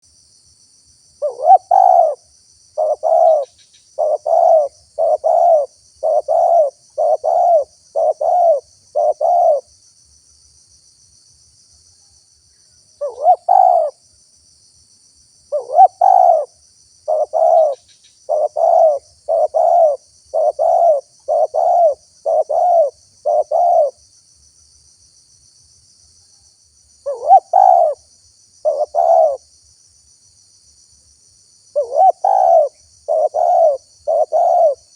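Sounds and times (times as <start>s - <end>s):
insects chirring: 0.0s - 34.9s
dove cooing: 1.2s - 2.2s, 2.8s - 9.7s, 13.0s - 14.0s, 15.5s - 16.5s, 17.1s - 24.0s, 27.0s - 28.0s, 28.6s - 29.4s, 31.7s - 34.9s.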